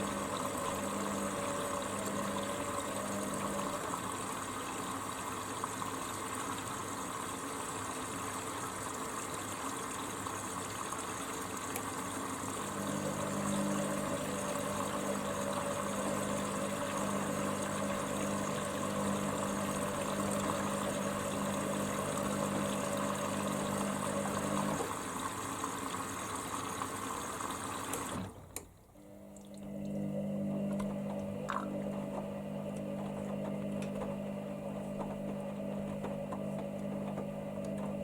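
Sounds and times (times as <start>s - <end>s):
washing machine filling with water: 0.0s - 38.0s
washing machine click: 30.5s - 38.0s.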